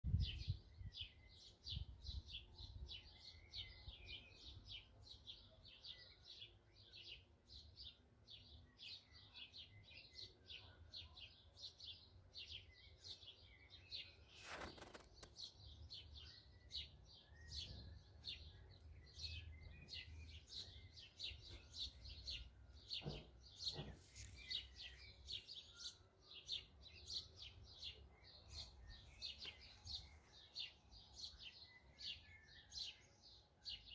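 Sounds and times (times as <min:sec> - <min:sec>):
songbirds chirping: 0:00.1 - 0:33.9.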